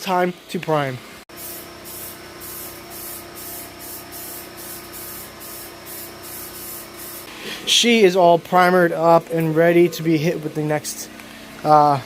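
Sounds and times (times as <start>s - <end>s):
aerosol spray can hissing: 1.3s - 7.3s.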